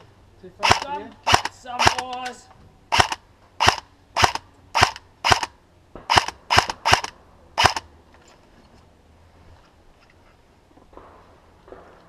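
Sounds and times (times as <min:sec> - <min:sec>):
airsoft gun shots: 0:00.6 - 0:07.9.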